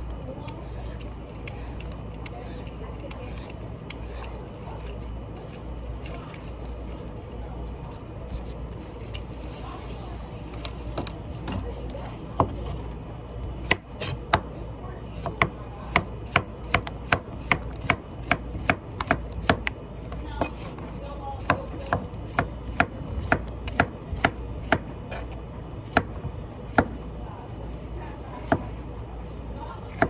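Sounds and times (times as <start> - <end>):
knife chopping on cutting board: 13.6 - 14.4, 15.2 - 20.8, 21.4 - 27.0, 28.4 - 28.8.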